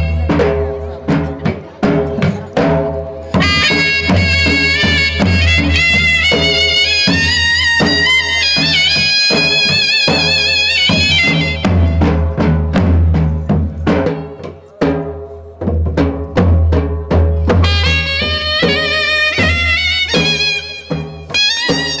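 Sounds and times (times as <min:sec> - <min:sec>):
reedy wind instrument melody: 0:00.0 - 0:00.8, 0:03.2 - 0:12.4, 0:17.4 - 0:22.0
steady drum beats: 0:00.0 - 0:22.0.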